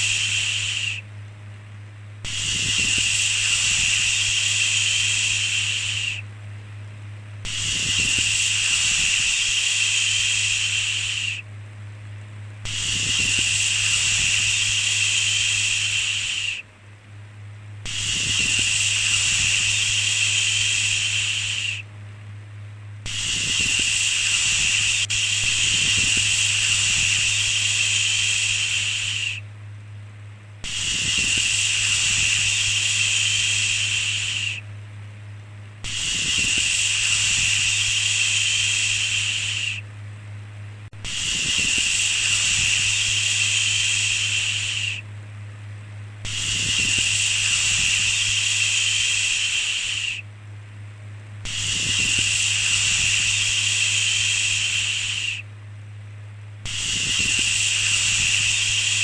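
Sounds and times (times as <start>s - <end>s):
person shushing: 0.0s - 1.0s, 2.3s - 6.2s, 30.6s - 34.6s, 35.9s - 39.8s, 41.0s - 45.0s, 51.5s - 55.4s
steady low hum: 0.0s - 59.0s.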